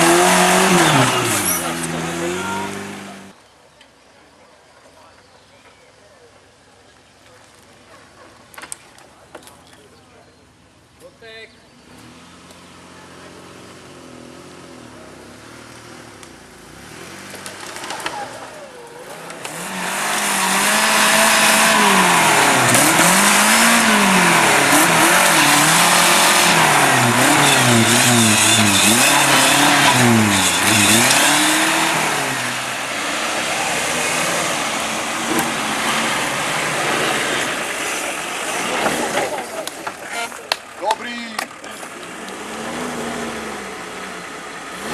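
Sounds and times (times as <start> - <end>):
car engine revving hard: 0.0 - 3.3, 19.0 - 39.4, 42.1 - 44.9.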